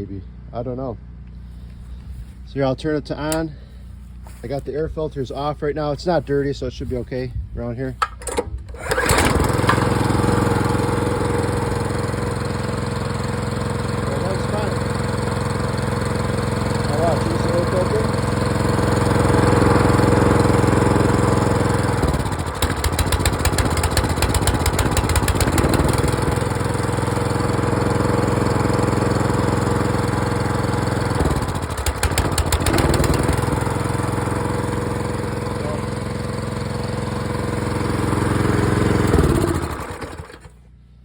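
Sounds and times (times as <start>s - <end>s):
small gas engine running rough: 8.6s - 40.8s.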